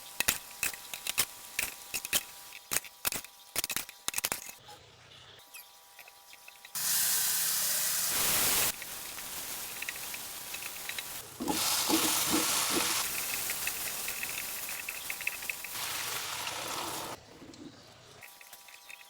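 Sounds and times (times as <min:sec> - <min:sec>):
food sizzling in hot oil: 0:06.8 - 0:17.2.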